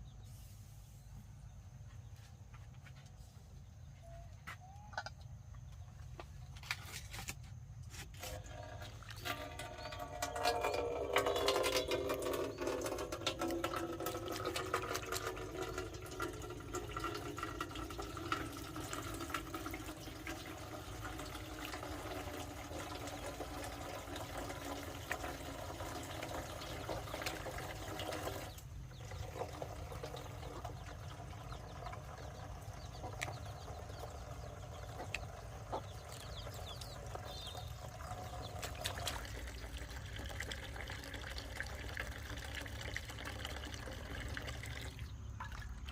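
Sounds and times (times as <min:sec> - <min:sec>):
water splashing: 0:29.1 - 0:45.9.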